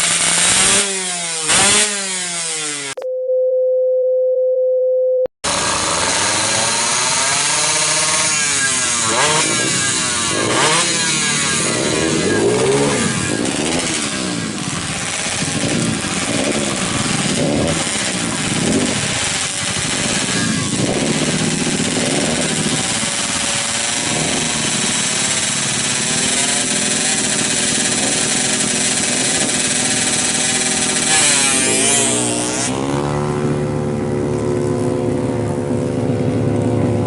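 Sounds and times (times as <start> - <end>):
two-stroke engine revving: 0.0 - 3.0, 5.4 - 37.0
steady beep tone: 3.0 - 5.3.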